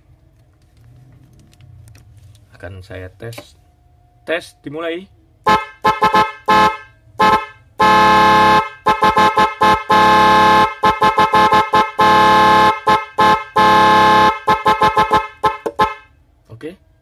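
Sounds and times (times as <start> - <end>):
two-tone horn blasts: 5.4 - 16.2.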